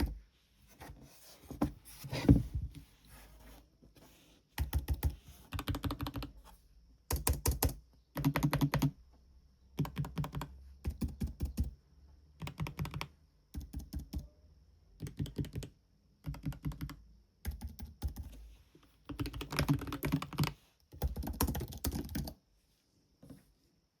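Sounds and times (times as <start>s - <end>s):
typing on computer keyboard: 4.6s - 6.4s, 7.1s - 9.0s, 9.8s - 11.8s, 12.4s - 14.3s, 15.0s - 18.3s, 19.1s - 22.4s.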